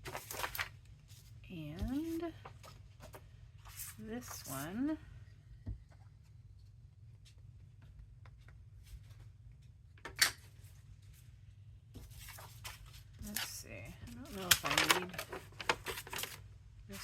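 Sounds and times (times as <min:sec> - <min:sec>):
low steady hum: 0:00.0 - 0:17.0.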